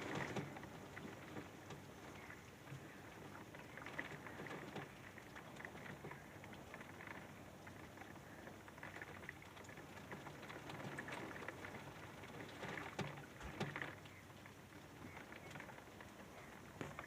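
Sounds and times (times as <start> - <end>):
rain pattering: 0.0 - 17.0
water drips: 0.0 - 17.0.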